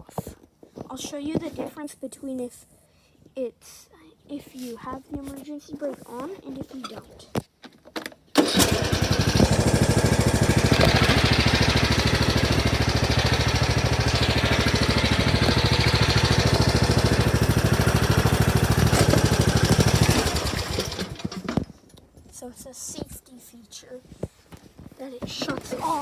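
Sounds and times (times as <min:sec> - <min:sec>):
lawnmower engine running: 0:08.3 - 0:21.7
engine winding down: 0:08.4 - 0:21.7.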